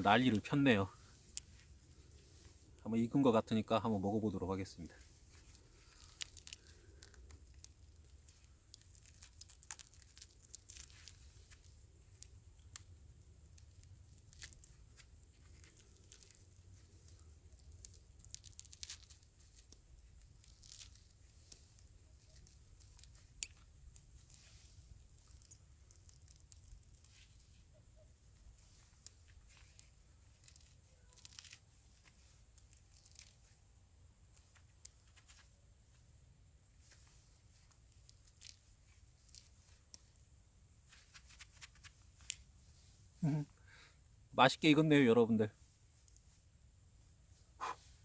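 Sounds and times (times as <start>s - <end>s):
campfire crackling: 0.0s - 44.5s, 45.8s - 48.0s
charred skin tearing: 4.6s - 42.6s.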